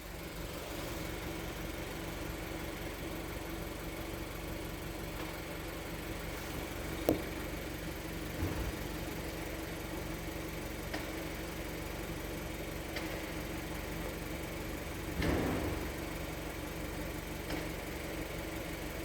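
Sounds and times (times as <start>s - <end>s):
car engine idling: 0.0s - 19.0s
short low thump: 8.4s - 8.9s.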